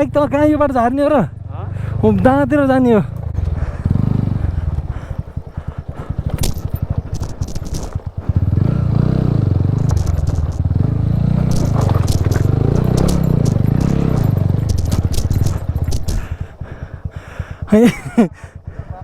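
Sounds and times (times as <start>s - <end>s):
motorcycle engine revving: 0.0s - 19.0s
scraping and clattering: 6.0s - 8.5s, 9.7s - 16.4s.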